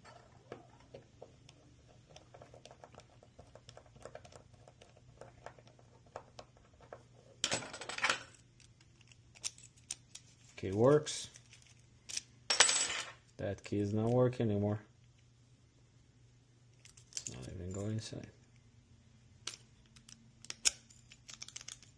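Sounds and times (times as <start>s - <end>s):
lock cylinder and key clicking: 19.5s - 21.9s.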